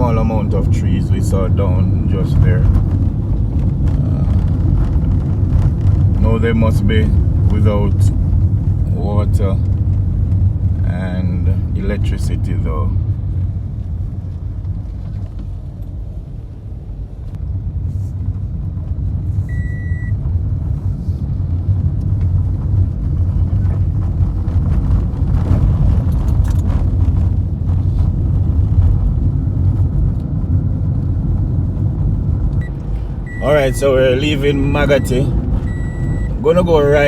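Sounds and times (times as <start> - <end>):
car engine and tyre rumble: 0.0 - 37.0
short high beep: 19.5 - 20.1, 32.6 - 36.4.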